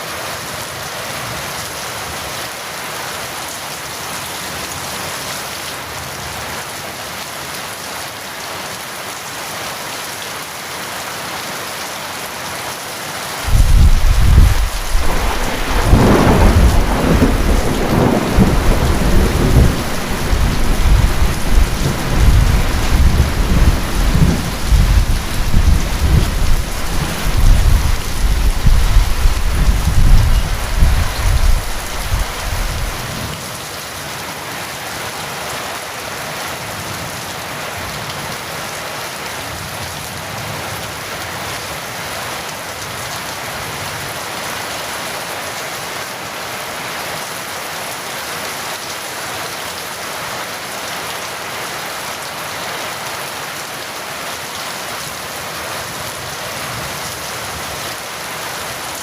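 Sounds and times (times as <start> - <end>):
heavy rain: 0.0 - 59.0
rolling thunder: 13.5 - 33.2.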